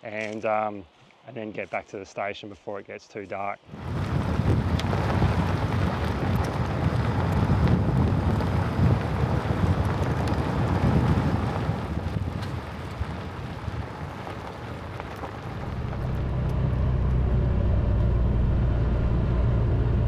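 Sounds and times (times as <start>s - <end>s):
wind buffeting microphone: 3.7s - 17.4s
off-road buggy rumbling: 3.7s - 20.0s.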